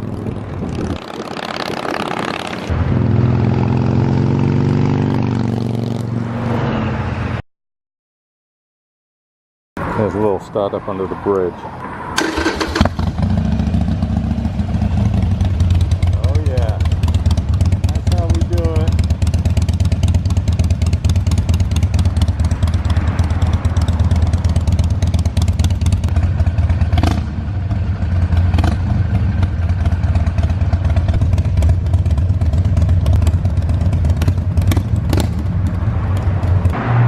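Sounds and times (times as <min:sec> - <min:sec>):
motorcycle engine running: 0:12.3 - 0:36.8.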